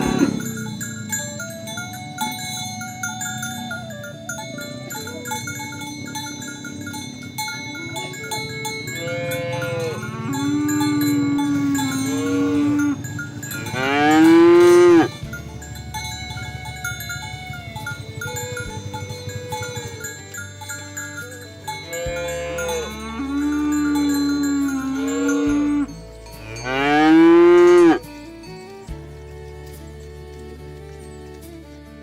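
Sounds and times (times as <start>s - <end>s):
oxen mooing: 0.0s - 0.8s, 8.0s - 15.6s, 21.8s - 28.0s
bell-like ringing tones: 0.0s - 31.2s.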